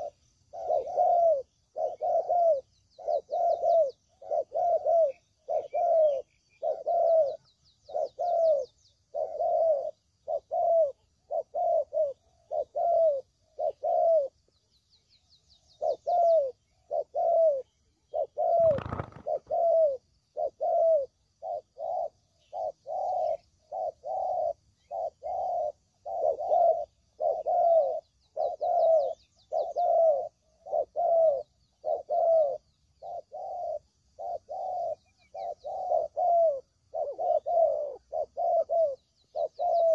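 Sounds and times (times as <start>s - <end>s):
dove cooing: 0.0s - 14.6s, 15.6s - 39.9s
small birds chirping trills: 0.0s - 39.9s.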